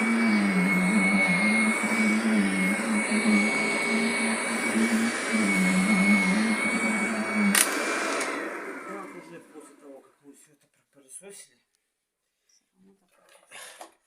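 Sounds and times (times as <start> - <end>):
vacuum cleaner running: 0.0 - 9.9.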